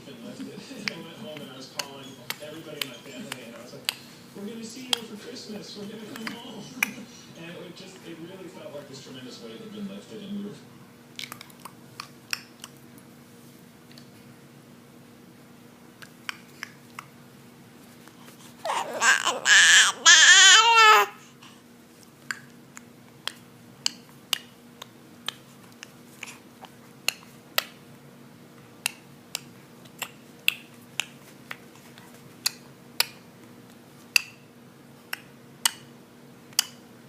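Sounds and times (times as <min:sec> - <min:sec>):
baby squealing cry: 0:18.6 - 0:21.2.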